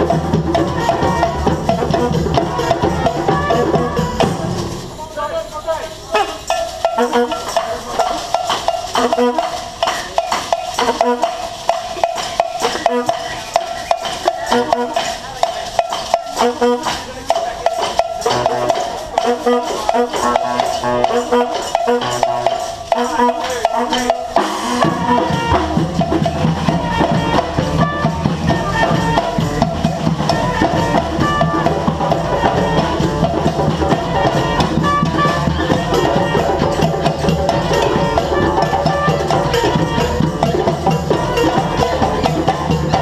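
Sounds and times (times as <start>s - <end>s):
drums: 0.0s - 43.0s
brass held note: 18.2s - 42.5s.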